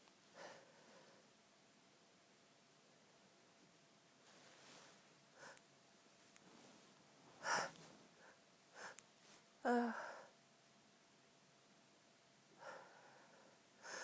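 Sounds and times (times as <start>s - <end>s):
woman gasping for breath: 12.6s - 14.0s.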